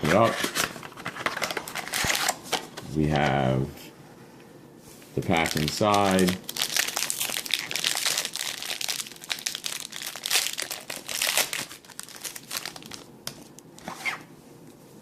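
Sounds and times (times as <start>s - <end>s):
wrapper crinkling and tearing: 0.2s - 2.6s, 5.3s - 13.6s.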